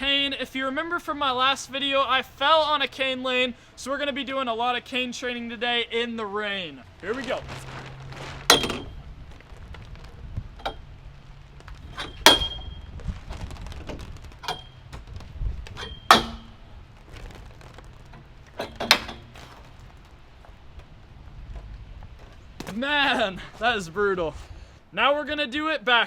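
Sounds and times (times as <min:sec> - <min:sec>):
steady rain: 0:06.2 - 0:12.0, 0:12.6 - 0:15.8, 0:16.5 - 0:18.6
metal cane clanking: 0:08.4 - 0:09.1, 0:10.6 - 0:10.9, 0:11.8 - 0:12.9, 0:14.1 - 0:20.0.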